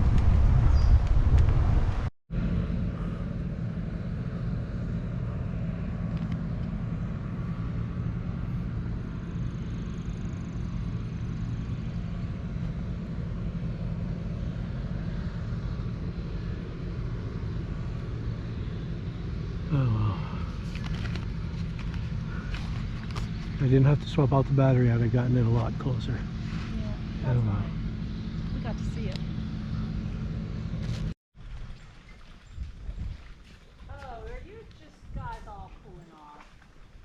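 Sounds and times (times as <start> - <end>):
wind on microphone: 0.0 - 3.1, 32.1 - 35.9
bicycle tyres rolling on trail: 19.7 - 27.0.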